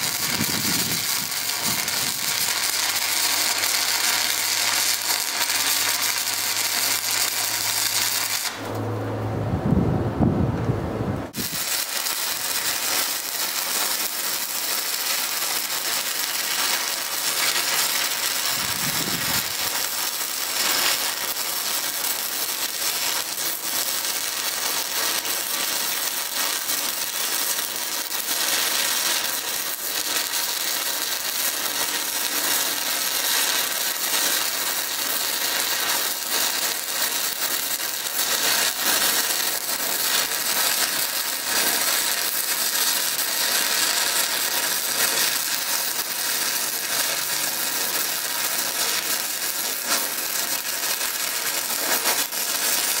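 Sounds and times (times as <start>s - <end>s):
welding arc crackling and sizzling: 0.0s - 8.8s, 11.3s - 53.0s.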